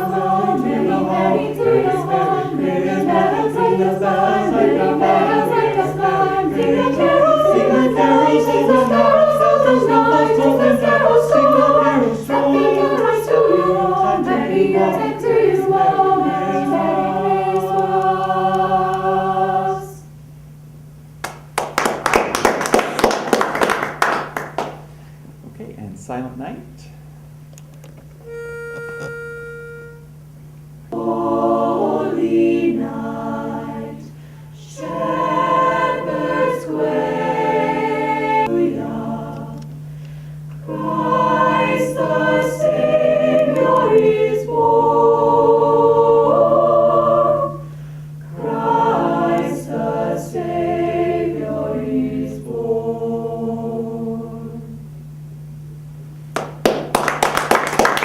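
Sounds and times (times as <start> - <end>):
choir singing unaccompanied: 0.0 - 20.2, 30.8 - 39.8, 40.4 - 54.9.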